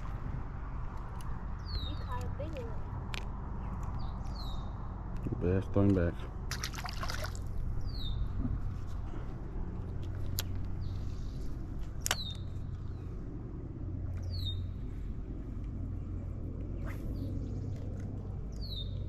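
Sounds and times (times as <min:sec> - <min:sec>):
steady low rumble: 0:00.0 - 0:19.0
sharp clicks: 0:12.0 - 0:12.4.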